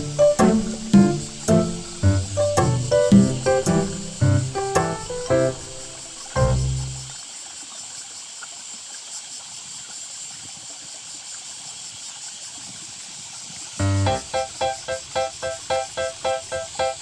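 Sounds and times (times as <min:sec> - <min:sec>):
background music note: 0:00.0 - 0:07.1, 0:13.8 - 0:17.0
river water running: 0:00.0 - 0:10.0, 0:13.6 - 0:17.0.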